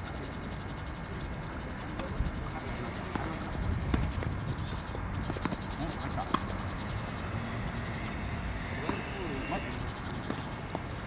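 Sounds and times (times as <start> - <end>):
insects droning: 0.0 - 11.0
ball bouncing on court: 3.0 - 4.4, 5.2 - 8.1, 8.7 - 9.4, 10.1 - 10.9
rackets striking tennis ball: 3.0 - 4.4, 5.2 - 11.0.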